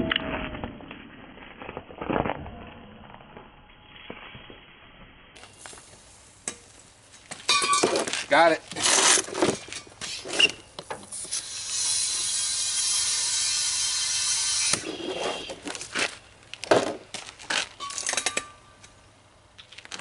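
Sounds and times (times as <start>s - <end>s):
compressed air hissing: 10.0s - 15.7s.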